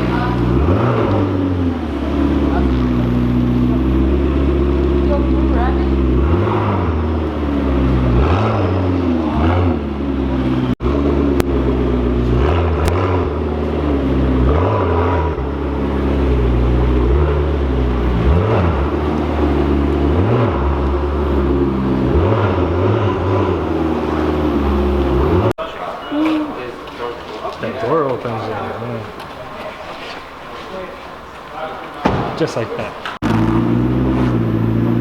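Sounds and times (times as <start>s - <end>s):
car engine idling with throttle blips: 0.0s - 25.6s, 33.2s - 35.0s.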